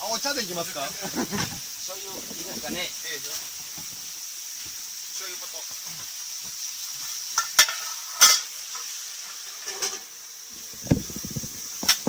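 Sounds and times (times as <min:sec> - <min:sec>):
meat sizzling in a frying pan: 0:00.0 - 0:12.0
rattling handling: 0:10.6 - 0:12.0.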